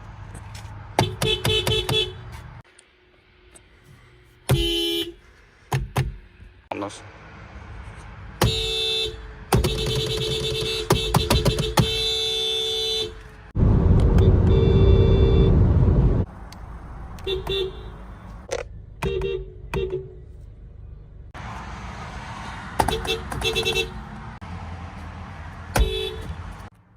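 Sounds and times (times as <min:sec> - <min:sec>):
car horn honking: 0:01.0 - 0:02.5, 0:04.5 - 0:05.2, 0:08.4 - 0:13.3, 0:14.1 - 0:15.7, 0:17.2 - 0:18.3, 0:19.0 - 0:20.2, 0:22.8 - 0:24.2, 0:25.7 - 0:26.7
loud low rumble: 0:13.6 - 0:16.3.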